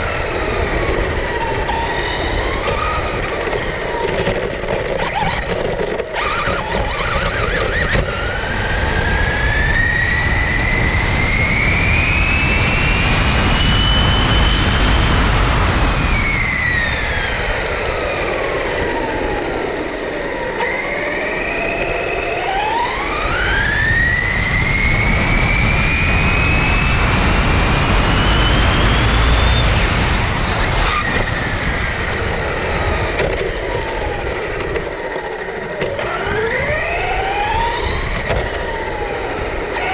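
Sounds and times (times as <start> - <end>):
electric motor whining: 0.0 - 39.9
wind and tyre noise: 0.0 - 39.9.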